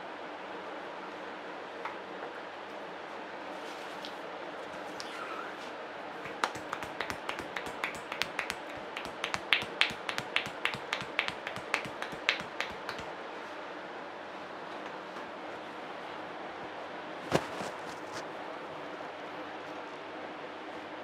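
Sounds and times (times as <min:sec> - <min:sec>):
hands snapping and clicking: 0:06.2 - 0:13.1.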